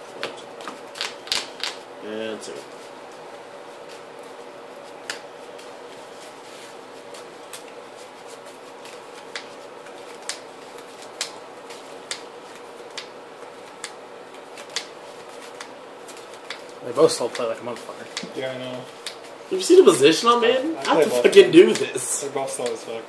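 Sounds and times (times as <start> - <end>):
low room hum: 0.0 - 23.0
cards tapping on a table: 0.2 - 1.8.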